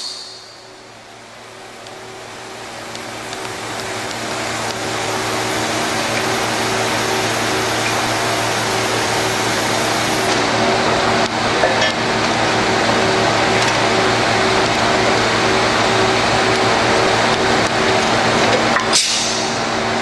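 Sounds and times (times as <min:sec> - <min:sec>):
cutting torch hissing: 0:00.0 - 0:11.2
low electrical hum: 0:00.0 - 0:18.9.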